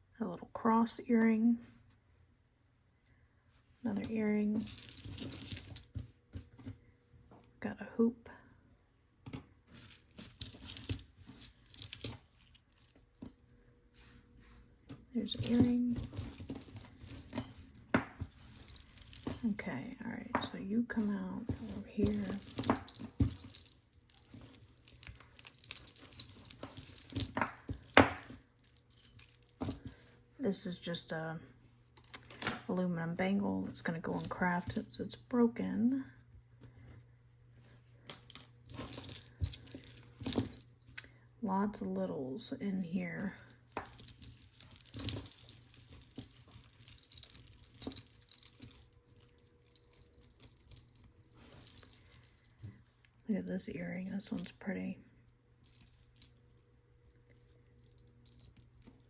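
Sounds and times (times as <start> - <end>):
jewelry rustling and clicking: 2.3 - 6.8, 9.2 - 13.6, 14.4 - 30.3, 32.0 - 32.7, 37.4 - 41.2, 43.2 - 54.7, 55.5 - 59.0.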